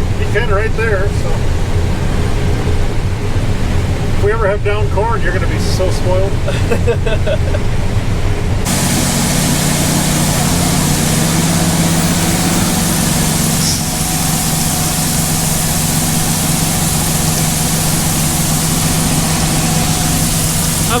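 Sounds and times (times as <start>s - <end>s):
combine harvester engine hum: 0.0s - 21.0s
even hiss: 8.7s - 21.0s.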